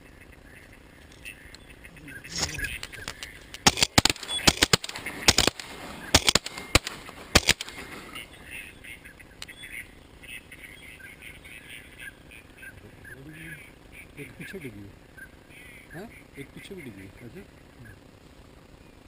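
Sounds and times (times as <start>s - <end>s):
ducks quacking: 0.0s - 3.7s, 4.4s - 18.0s
shotgun shots: 3.6s - 8.1s.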